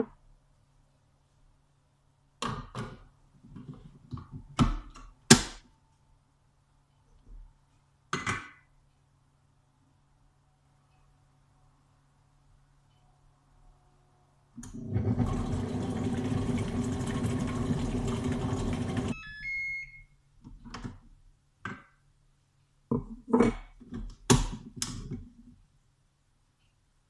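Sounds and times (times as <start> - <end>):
short high beep: 19.1 - 20.2.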